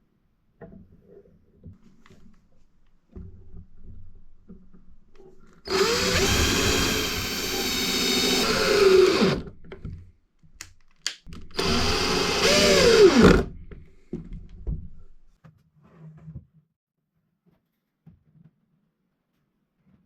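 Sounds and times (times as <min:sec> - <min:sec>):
electric drill running: 0:05.7 - 0:09.5, 0:11.5 - 0:13.5.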